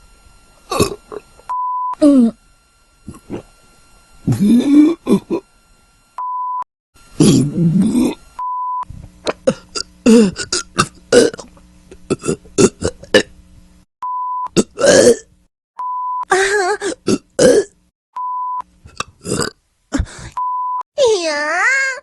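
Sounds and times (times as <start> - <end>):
person burping: 0.7 - 1.2, 3.1 - 3.5, 4.2 - 5.4, 7.2 - 8.2, 9.2 - 13.3, 14.5 - 15.3, 16.4 - 17.8, 18.9 - 20.1
short beep tones: 14.0 - 14.5, 18.2 - 18.6, 20.4 - 20.8.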